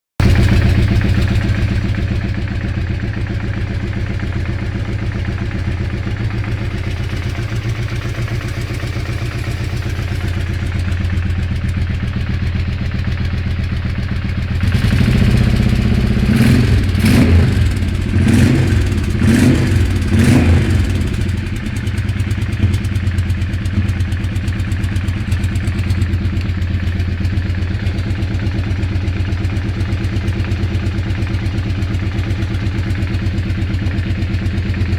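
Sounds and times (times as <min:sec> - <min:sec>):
engine idling and revving: 0:00.2 - 0:34.9.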